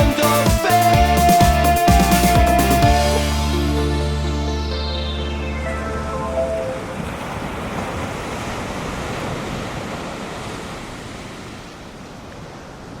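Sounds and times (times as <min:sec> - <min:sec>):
ocean surf breaking: 0:04.8 - 0:13.0.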